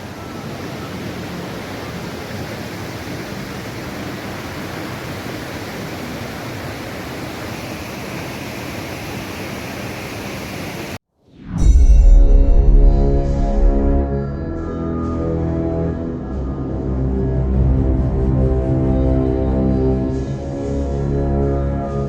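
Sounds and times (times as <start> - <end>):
waterfall roaring: 0.0 - 11.0.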